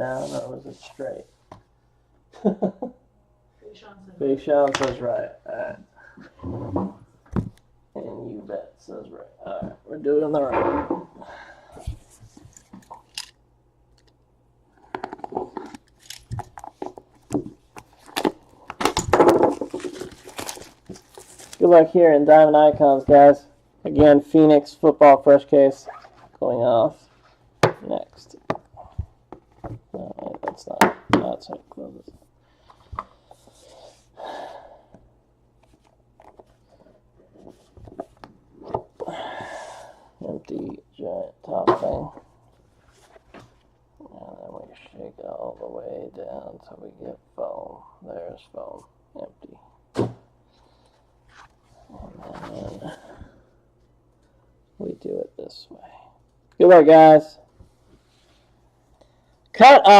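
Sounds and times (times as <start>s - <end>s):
person breathing: 11.2s - 12.2s, 32.4s - 35.1s, 39.0s - 40.2s, 52.7s - 54.5s, 58.9s - 59.5s
packaging crinkling and rustling: 17.7s - 21.7s.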